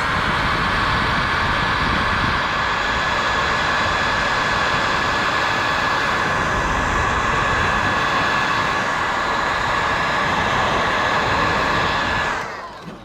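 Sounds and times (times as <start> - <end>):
heat gun blowing with whine: 0.0 - 13.0.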